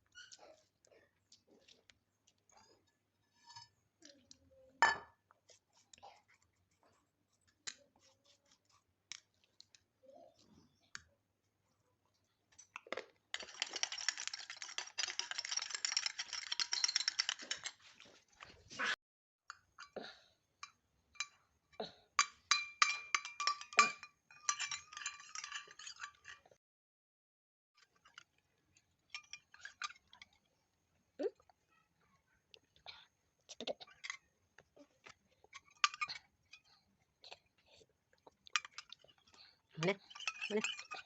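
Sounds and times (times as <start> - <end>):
spoon clinking on cup: 13.3 - 17.7, 22.2 - 26.5, 35.6 - 36.7, 38.6 - 41.0
utensils scraping: 13.4 - 18.1, 22.9 - 26.6, 38.6 - 41.0.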